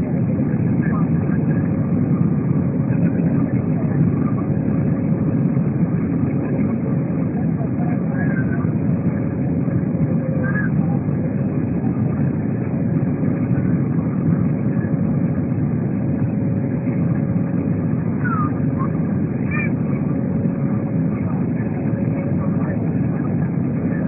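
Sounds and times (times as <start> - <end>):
jet engine roar inside cabin: 0.0 - 24.0.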